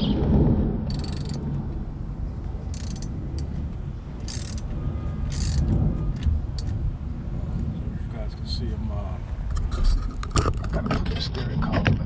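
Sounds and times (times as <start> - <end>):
low rumble: 0.0 - 12.0
ratchet-like tool scraping: 0.9 - 1.4, 2.7 - 3.5, 4.2 - 4.7, 5.3 - 5.7.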